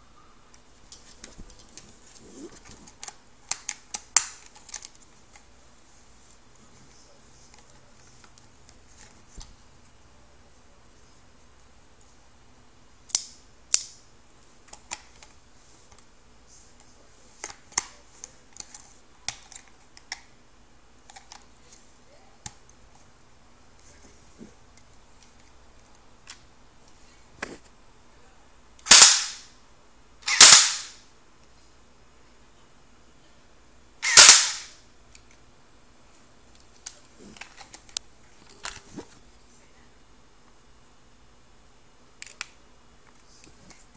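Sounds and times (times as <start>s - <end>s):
pistol shots: 28.9s - 29.4s, 30.3s - 31.0s, 34.0s - 34.7s
pistol metallic clicks: 30.3s - 31.0s, 34.0s - 34.7s.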